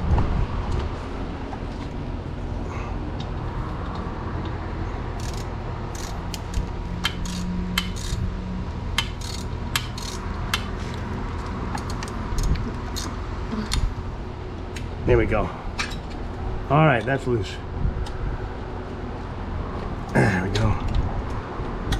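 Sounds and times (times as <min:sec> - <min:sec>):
metallic tool clicks and clinks: 0:05.2 - 0:08.2, 0:09.0 - 0:11.0.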